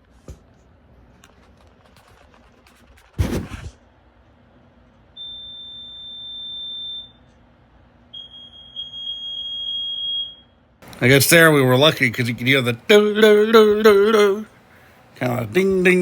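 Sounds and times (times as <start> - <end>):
high alarm beep: 5.2 - 7.3, 8.2 - 10.5
pulsing alarm tone: 8.2 - 10.5.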